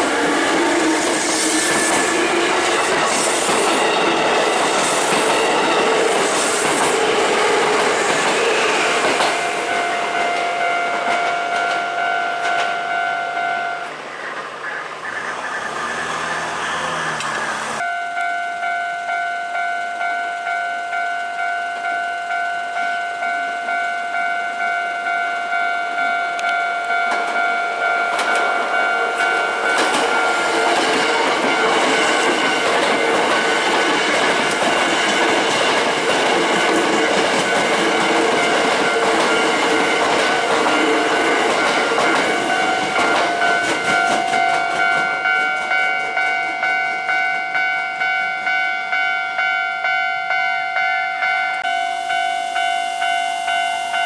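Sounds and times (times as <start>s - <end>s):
train wheels clattering over rails: 0.0s - 11.8s, 28.1s - 47.0s
level-crossing warning bell ringing: 0.0s - 54.0s.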